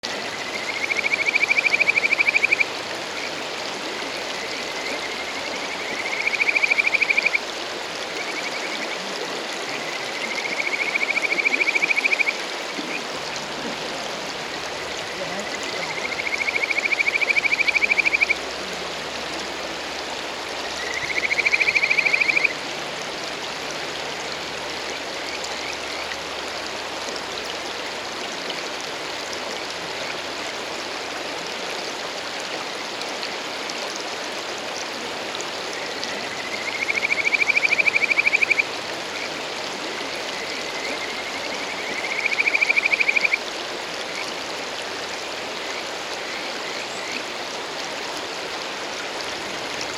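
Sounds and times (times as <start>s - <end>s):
frogs trilling whistle calls: 0.0s - 26.6s, 35.4s - 47.6s
mountain stream rushing: 0.0s - 49.9s.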